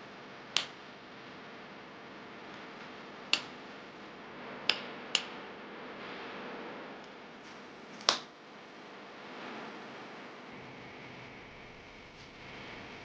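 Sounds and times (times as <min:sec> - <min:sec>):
faint steady hiss: 0:00.0 - 0:13.0
sharp clicks: 0:03.3 - 0:03.6.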